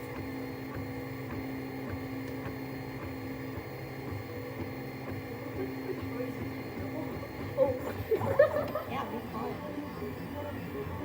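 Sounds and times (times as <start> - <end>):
stepper motors humming: 0.0 - 11.0.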